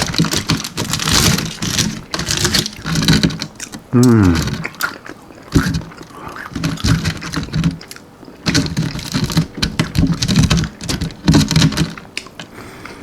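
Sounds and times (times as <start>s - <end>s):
chewing crunches: 0.0s - 12.5s
wet mouth clicks: 3.6s - 6.5s.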